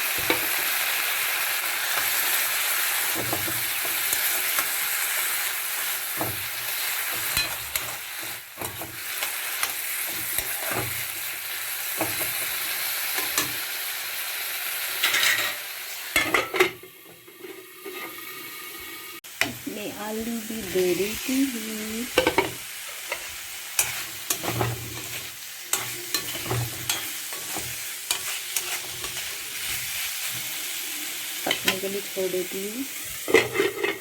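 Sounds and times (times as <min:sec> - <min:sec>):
food sizzling in a pan: 0:00.0 - 0:34.0
spatula scraping a pan: 0:02.0 - 0:13.6, 0:15.0 - 0:19.1, 0:22.1 - 0:30.8, 0:32.9 - 0:34.0.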